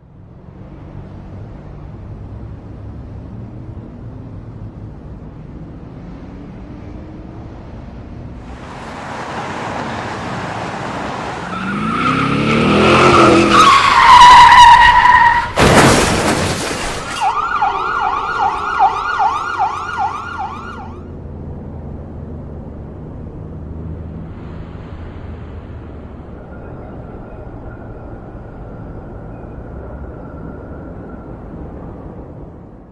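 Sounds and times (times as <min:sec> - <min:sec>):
car engine revving: 0:08.5 - 0:14.3
tyres screeching: 0:10.9 - 0:21.0
car crash impact: 0:15.3 - 0:17.5
wailing car alarm: 0:17.1 - 0:21.0.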